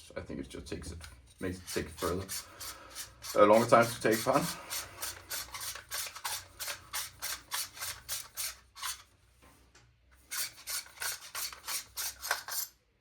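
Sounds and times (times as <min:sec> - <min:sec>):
hand tool rasping on screw: 0:01.4 - 0:09.1, 0:10.3 - 0:12.7.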